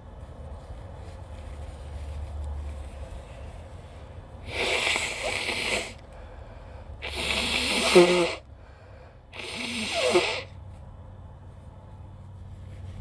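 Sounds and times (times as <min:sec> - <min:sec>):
person sniffing: 0:04.4 - 0:06.4, 0:07.0 - 0:08.8, 0:09.4 - 0:10.5.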